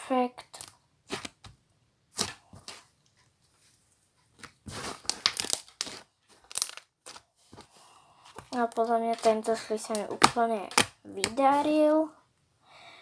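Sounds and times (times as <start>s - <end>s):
slime crackling and tearing: 4.7s - 7.2s.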